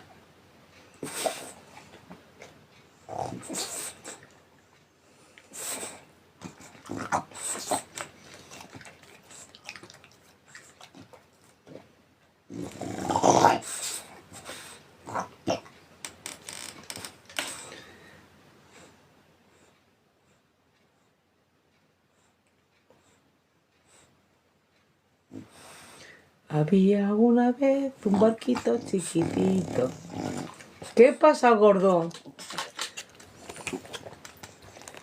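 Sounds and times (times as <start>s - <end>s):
dog snoring: 3.0s - 4.2s, 12.5s - 15.7s, 28.0s - 31.0s.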